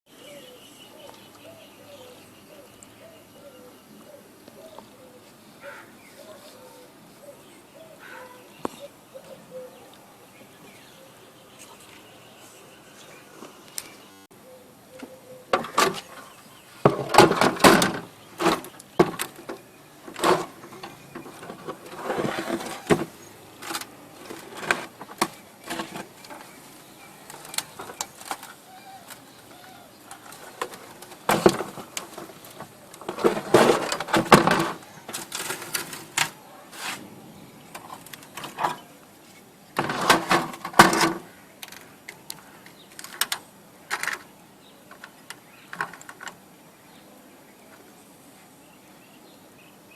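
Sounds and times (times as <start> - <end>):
computer casing clicks and knocks: 16.9 - 21.8.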